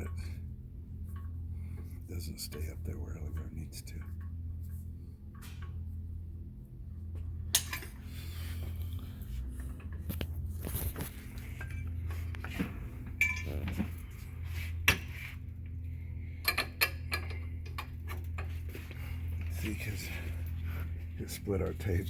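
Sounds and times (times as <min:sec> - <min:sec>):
steady low hum: 0:00.0 - 0:22.0
metal tools clinking and knocking: 0:07.5 - 0:08.0, 0:13.2 - 0:13.6.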